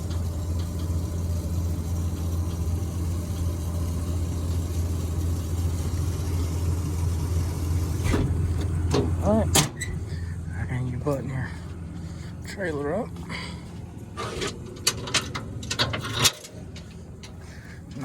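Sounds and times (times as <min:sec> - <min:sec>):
truck engine idling: 0:00.0 - 0:18.0.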